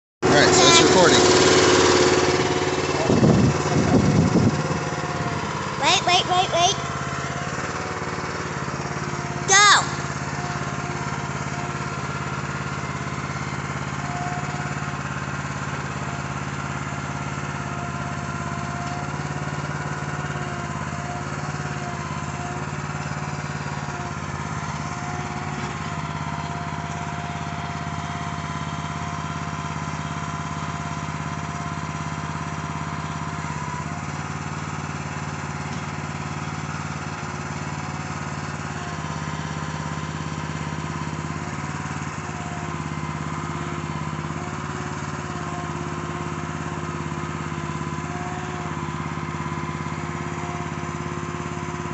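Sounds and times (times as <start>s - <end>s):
small gasoline engine running: 0.2s - 51.9s.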